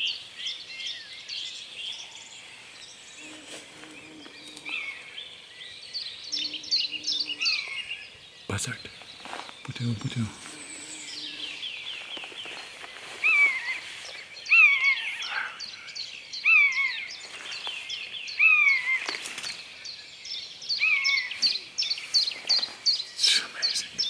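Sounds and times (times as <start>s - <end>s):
songbirds chirping: 0.0s - 24.0s.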